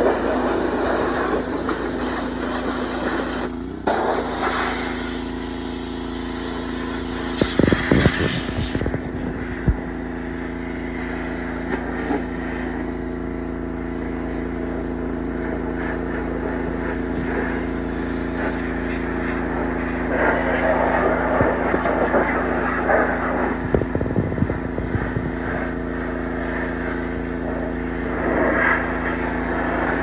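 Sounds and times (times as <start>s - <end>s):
water spray hissing: 0.0s - 8.9s
pressure washer engine hum: 0.0s - 30.0s.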